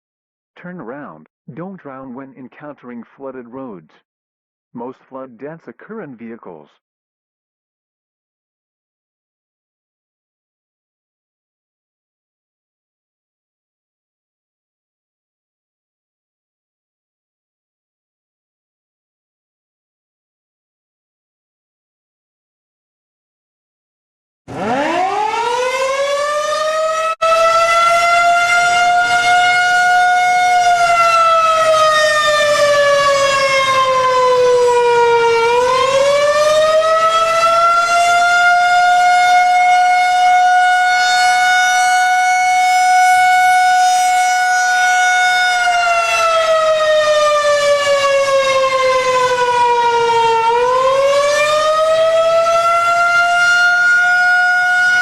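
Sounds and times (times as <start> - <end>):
warning siren wailing: 24.5 - 55.0.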